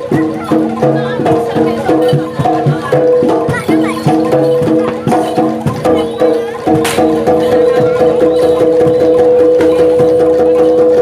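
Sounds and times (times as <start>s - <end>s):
drums and percussion ensemble: 0.0s - 11.0s.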